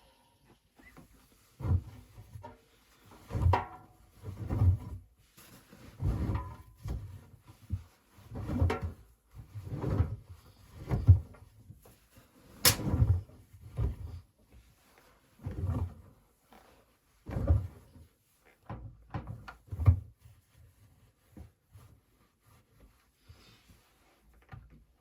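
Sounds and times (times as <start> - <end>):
washing machine drum turning: 12.7 - 13.0.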